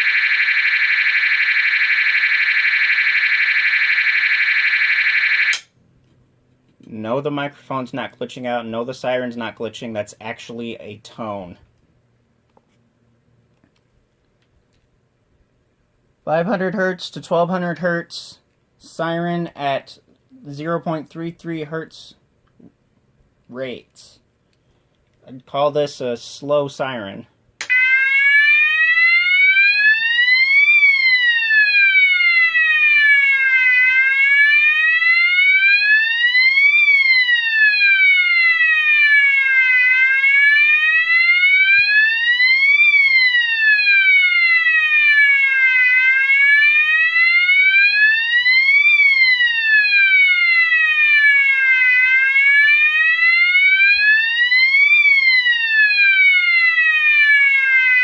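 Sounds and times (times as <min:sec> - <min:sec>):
slow wailing alarm siren: 0:00.0 - 0:05.7, 0:27.6 - 0:58.0.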